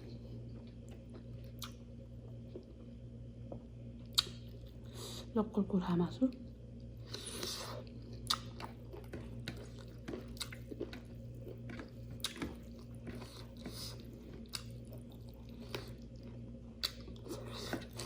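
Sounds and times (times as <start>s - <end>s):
chewing mouth sounds: 7.0s - 18.0s.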